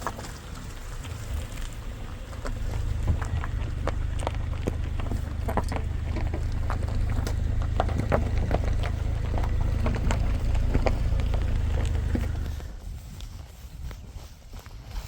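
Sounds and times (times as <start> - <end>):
low rumble: 0.0 - 14.2
footsteps crunching through dry twigs: 0.0 - 15.0.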